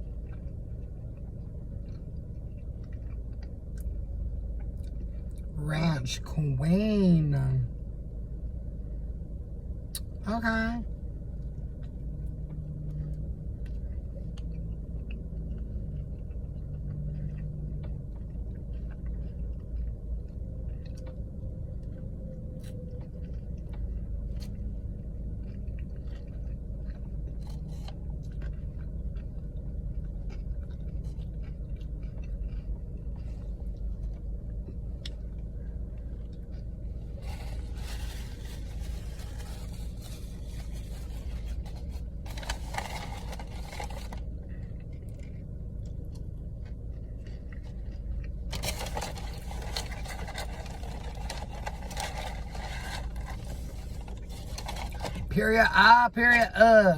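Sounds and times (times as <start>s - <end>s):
person chewing food: 0.0s - 5.5s, 11.1s - 55.3s
steady low rumble: 0.0s - 56.9s
rustle or scrape: 37.0s - 44.2s, 48.5s - 55.4s.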